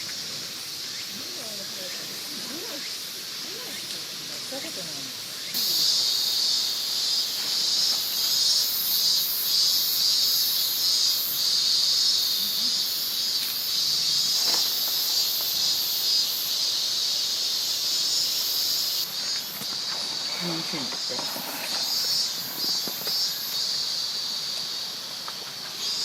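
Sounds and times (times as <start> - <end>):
insect trilling: 0.0 - 26.0
insects buzzing: 0.0 - 26.0.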